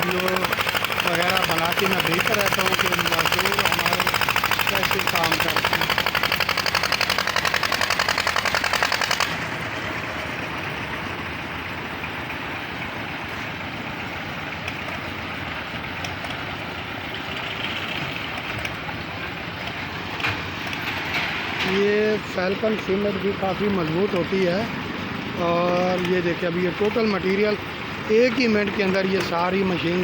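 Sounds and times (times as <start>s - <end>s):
fast rhythmic mechanical pulsing: 0.0s - 10.6s
concrete mixer engine running: 0.0s - 30.0s.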